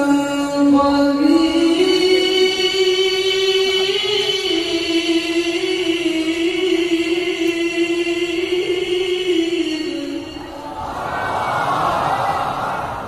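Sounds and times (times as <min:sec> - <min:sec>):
person reciting in melodious chant: 0:00.0 - 0:11.5.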